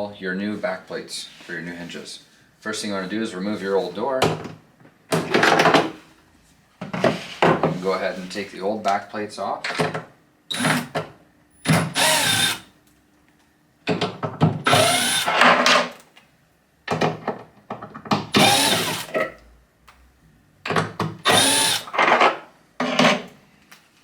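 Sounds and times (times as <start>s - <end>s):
cordless drill unscrewing screws: 11.7s - 12.6s, 14.7s - 15.3s, 18.4s - 19.1s, 21.3s - 21.9s.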